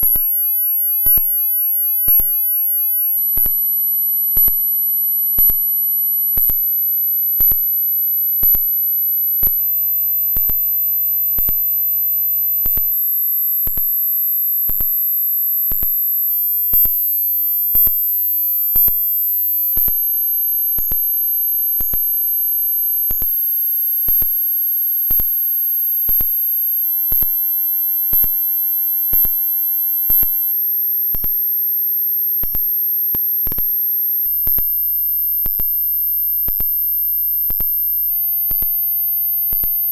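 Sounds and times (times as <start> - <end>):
high-pitched sine test tone: 0.0 - 39.9
soft regular ticks: 6.4 - 6.6, 10.4 - 10.7, 11.4 - 11.6, 12.7 - 12.9, 13.6 - 13.9, 14.6 - 15.0, 15.7 - 16.0, 21.8 - 22.1.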